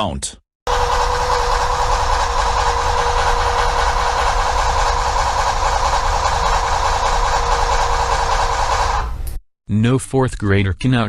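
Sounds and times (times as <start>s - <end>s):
machine drone humming: 0.7s - 9.3s.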